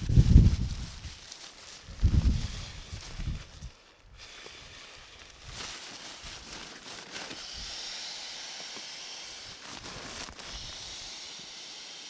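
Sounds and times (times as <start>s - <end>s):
fabric rustling: 0.0s - 4.0s, 5.4s - 7.4s, 9.6s - 10.6s
air hissing into sleeping pad: 0.0s - 12.0s.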